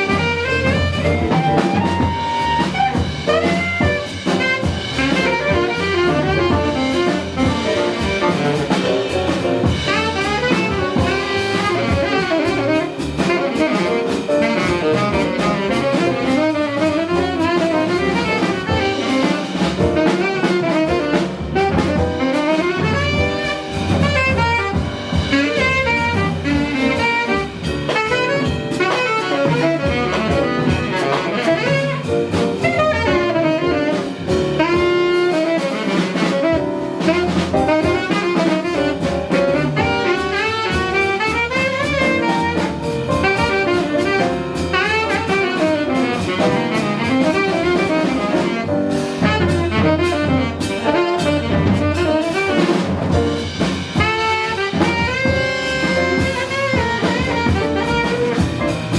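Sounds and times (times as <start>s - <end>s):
jazz band playing live: 0.0s - 58.9s
saxophone lead runs: 0.0s - 58.9s.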